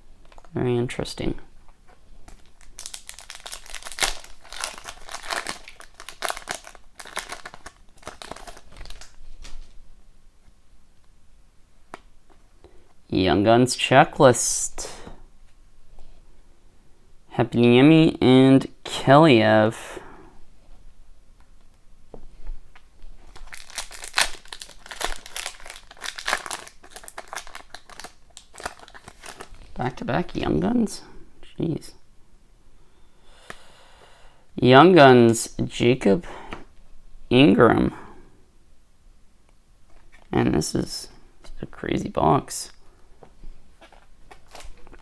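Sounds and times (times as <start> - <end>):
wrapper crinkling: 2.2 - 9.8, 23.2 - 30.4, 43.8 - 45.0.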